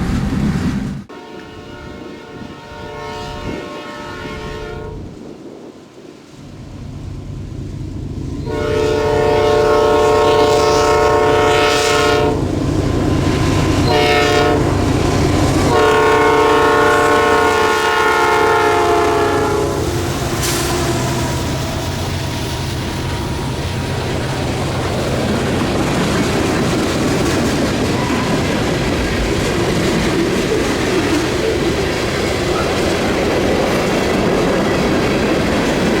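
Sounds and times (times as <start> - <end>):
locomotive air horn blasts: 1.1 - 5.2, 8.4 - 12.5, 13.7 - 22.6, 27.8 - 28.6.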